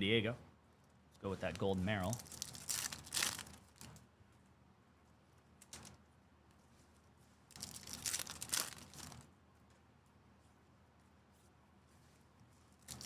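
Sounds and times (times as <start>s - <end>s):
card pack wrapper crinkling: 1.5s - 3.9s, 7.6s - 9.2s.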